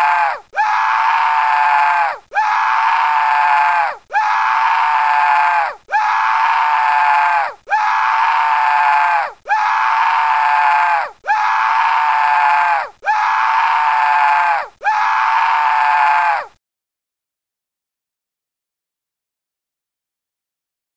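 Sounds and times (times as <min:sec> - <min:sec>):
cartoon scream: 0:00.0 - 0:16.6.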